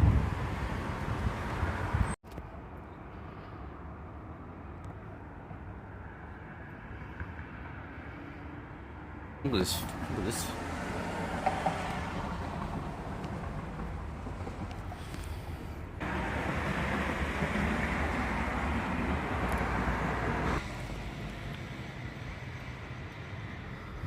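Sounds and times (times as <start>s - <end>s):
wind rumbling on microphone: 0.0s - 2.6s
heavy rain: 16.0s - 20.5s.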